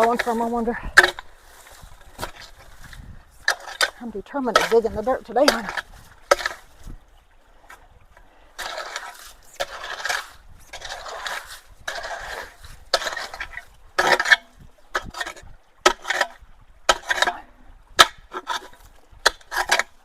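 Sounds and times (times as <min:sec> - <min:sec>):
tool scraping into gravel: 0:08.6 - 0:16.3, 0:18.4 - 0:20.0.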